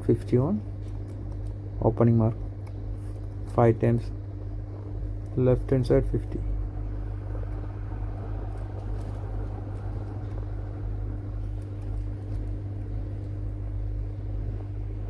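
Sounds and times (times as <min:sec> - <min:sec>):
low background hum: 0:00.0 - 0:15.0.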